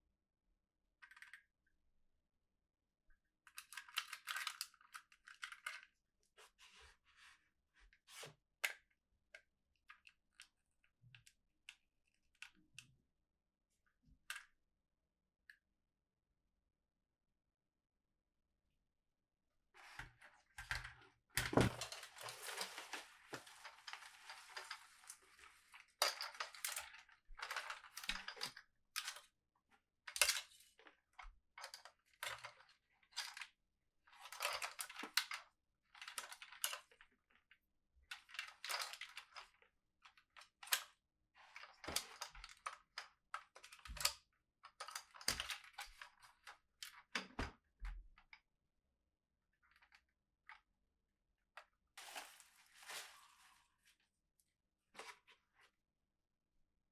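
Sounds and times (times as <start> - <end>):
plastic packaging rustling: 21.6 - 25.8, 52.0 - 53.8.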